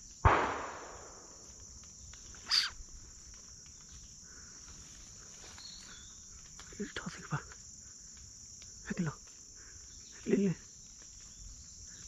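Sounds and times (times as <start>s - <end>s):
insects buzzing: 0.0s - 12.0s
gunshot echo: 0.2s - 1.5s.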